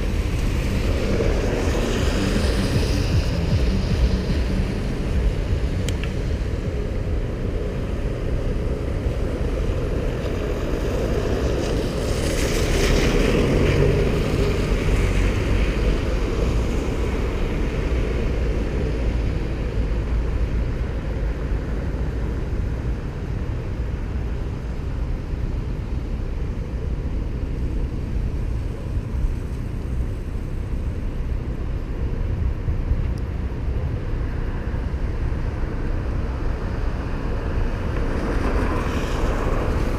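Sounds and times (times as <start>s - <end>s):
road noise rumble: 0.0s - 39.9s
wind rushing over microphone: 0.0s - 39.9s.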